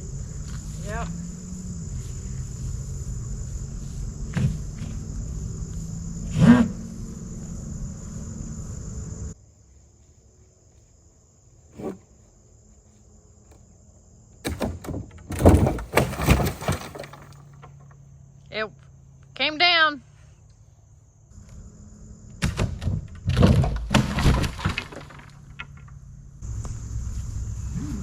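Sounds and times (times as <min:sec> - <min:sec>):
insects buzzing: 0:00.0 - 0:28.0
wooden frame crashing to ground: 0:14.4 - 0:17.9, 0:22.4 - 0:26.0
wooden knocks: 0:14.4 - 0:17.9.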